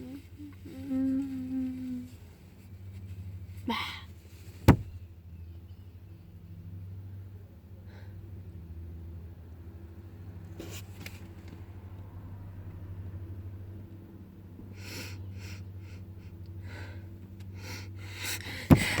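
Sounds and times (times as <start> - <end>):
loud bump: 4.7 - 5.0, 18.7 - 19.0.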